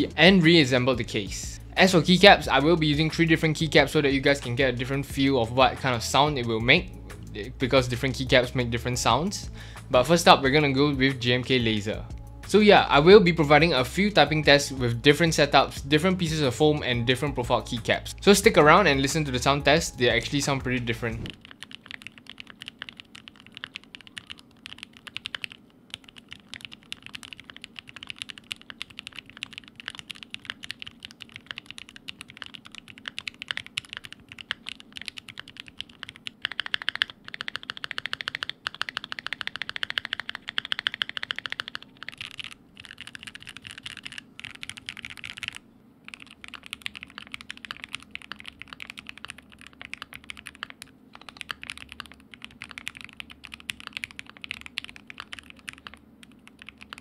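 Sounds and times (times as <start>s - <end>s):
mechanical keyboard typing: 21.2s - 57.0s.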